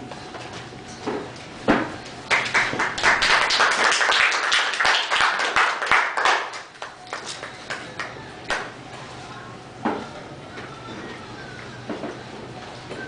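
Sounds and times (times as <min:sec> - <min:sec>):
audience clapping: 0:02.3 - 0:08.7.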